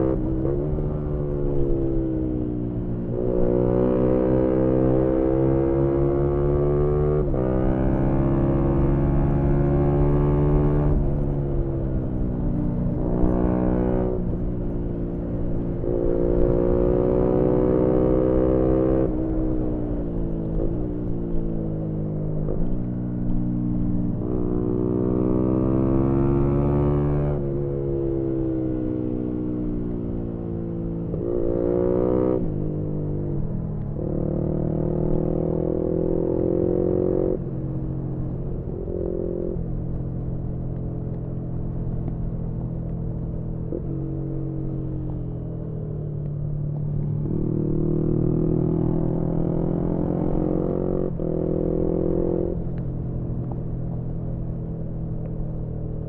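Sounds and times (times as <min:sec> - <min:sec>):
motorcycle engine revving: 0:33.9 - 0:37.4, 0:46.8 - 0:52.8.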